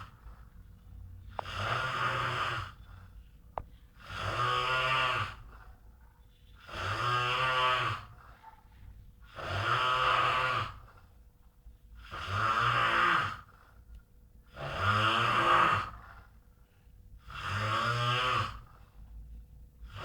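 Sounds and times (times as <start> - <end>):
man snoring: 1.3 - 2.8, 4.0 - 5.4, 9.3 - 10.8, 12.0 - 13.5, 14.5 - 16.0, 17.2 - 18.7.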